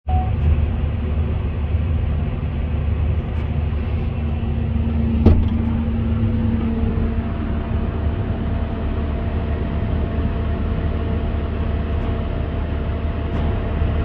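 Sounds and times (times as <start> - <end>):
sharp clank: 3.8 - 5.8.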